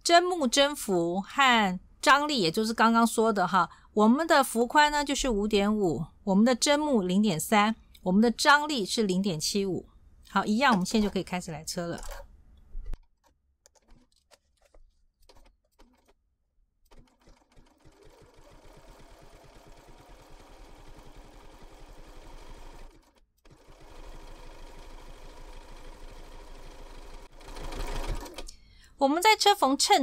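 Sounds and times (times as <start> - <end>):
sewing machine stitching: 10.7 - 12.3, 12.9 - 16.2, 16.9 - 28.5.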